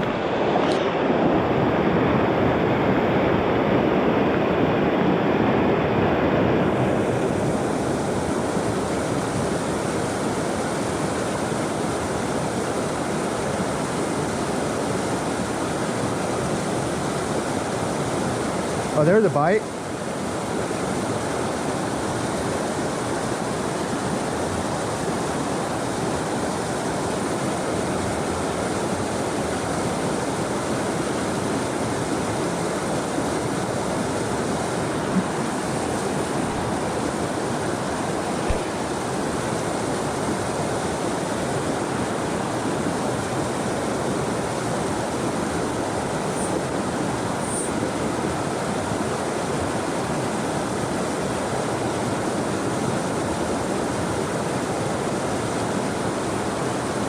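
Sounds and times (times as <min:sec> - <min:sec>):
creek water rushing: 0:00.0 - 0:57.0.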